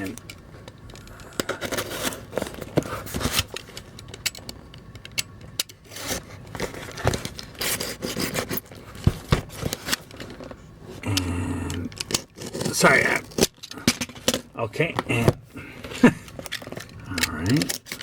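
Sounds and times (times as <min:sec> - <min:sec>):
package tearing and crinkling: 0:05.8 - 0:10.5.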